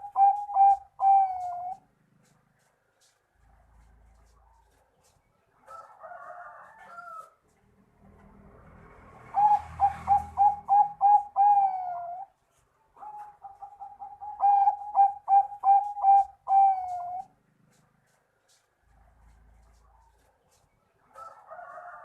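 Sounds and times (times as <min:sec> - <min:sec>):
dove cooing: 0:00.0 - 0:02.4, 0:09.2 - 0:12.4, 0:13.0 - 0:18.2.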